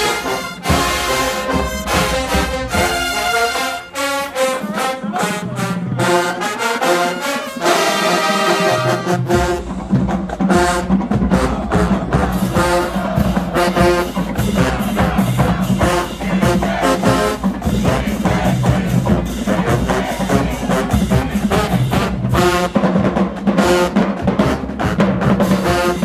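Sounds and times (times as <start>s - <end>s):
brass section chords: 0.0s - 26.0s
marching band playing: 0.0s - 26.0s
bass drums and percussion: 9.3s - 26.0s.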